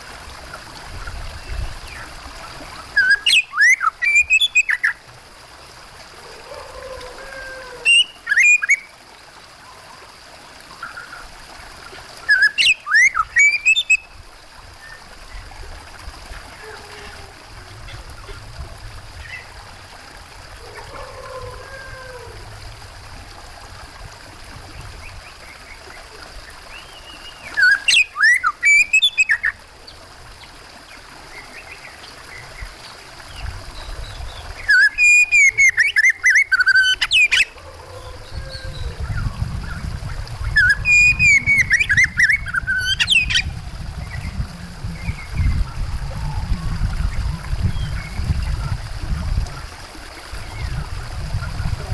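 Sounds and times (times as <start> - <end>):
running water rushing: 0.0 - 51.9
bird whistling calls: 3.0 - 5.0, 7.9 - 8.9, 12.3 - 14.1, 26.8 - 29.6, 34.6 - 37.5, 40.5 - 43.5.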